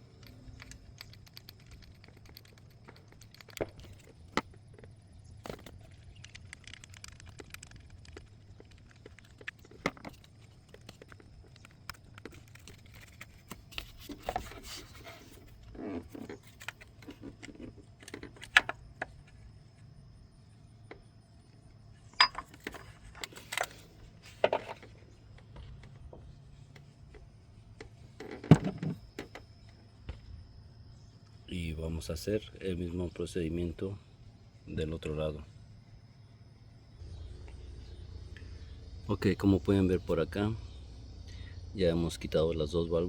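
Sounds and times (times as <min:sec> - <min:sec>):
tools and bolts clinking on metal: 0:22.1 - 0:23.6.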